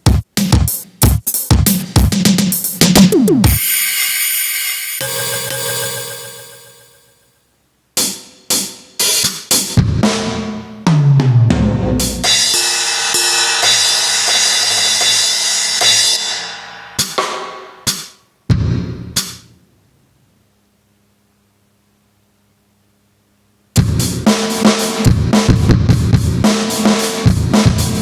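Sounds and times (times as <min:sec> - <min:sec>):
electronic drum strikes: 0:00.0 - 0:07.0, 0:08.0 - 0:19.5, 0:23.8 - 0:28.0
cymbal wash ringing: 0:03.5 - 0:07.3.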